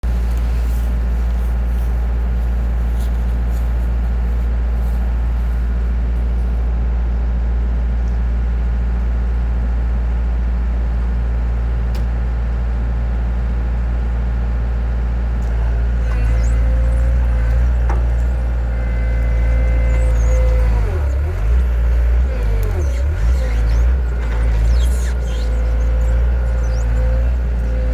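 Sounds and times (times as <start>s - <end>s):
large engine humming: 0.0s - 27.9s
thin whine: 15.4s - 27.9s.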